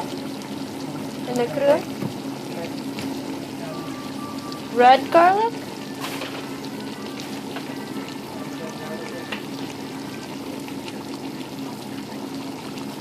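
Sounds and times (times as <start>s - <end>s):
food sizzling in a pan: 0.0s - 13.0s
low steady hum: 0.0s - 13.0s
sharp frying pops: 1.9s - 3.4s, 4.5s - 8.0s.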